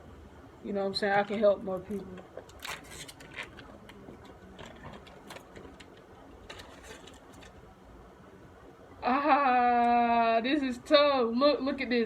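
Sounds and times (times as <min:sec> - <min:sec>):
packaging rustling and clicking: 0:02.2 - 0:07.6.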